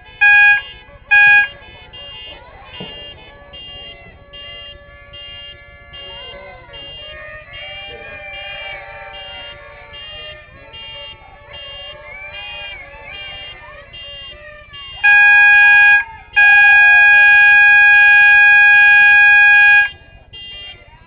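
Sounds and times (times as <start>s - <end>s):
fire alarm beeping: 0.2s - 6.2s, 6.8s - 20.8s.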